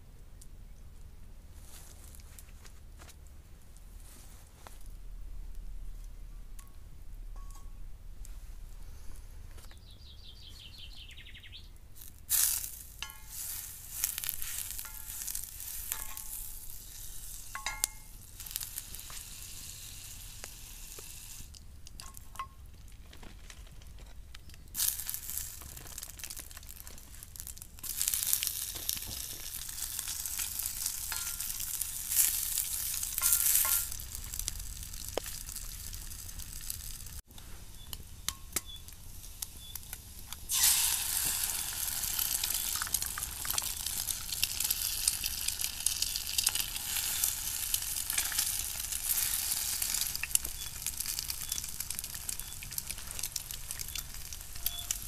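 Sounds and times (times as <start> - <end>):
bird chirps: 9.6 - 11.8, 37.7 - 38.9, 39.6 - 39.8, 50.5 - 53.0, 53.7 - 55.0
food sizzling in a pan: 12.3 - 21.6, 24.8 - 37.2, 40.4 - 55.0.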